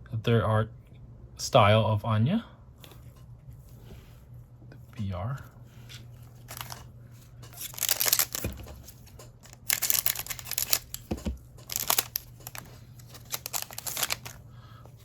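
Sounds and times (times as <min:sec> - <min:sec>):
foil wrapper tearing and crinkling: 0:06.5 - 0:06.9, 0:07.5 - 0:14.4.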